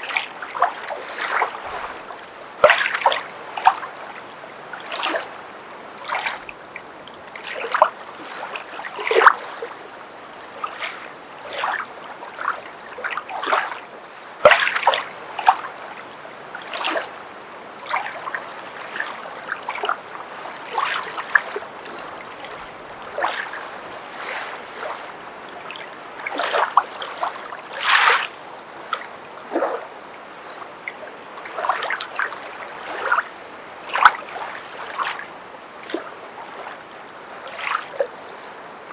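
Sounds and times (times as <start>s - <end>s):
background wash of water: 0.0s - 38.9s
footsteps splashing through water: 0.1s - 4.2s, 19.8s - 28.3s.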